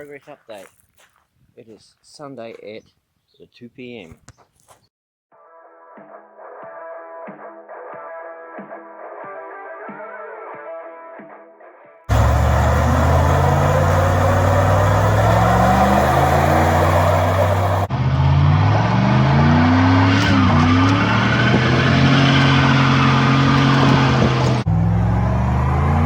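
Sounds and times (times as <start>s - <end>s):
car engine revving: 12.1s - 26.0s
tyre noise: 19.7s - 24.7s.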